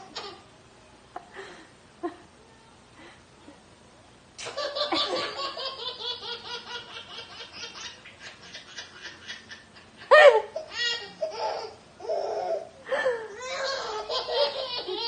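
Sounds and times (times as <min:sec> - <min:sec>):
baby laughing: 0:04.4 - 0:12.7, 0:13.4 - 0:15.0.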